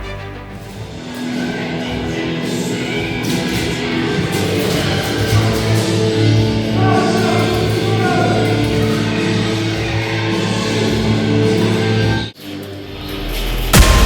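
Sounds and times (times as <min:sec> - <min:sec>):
rock music with singing: 0:00.9 - 0:12.3
heavy bass: 0:13.3 - 0:14.0.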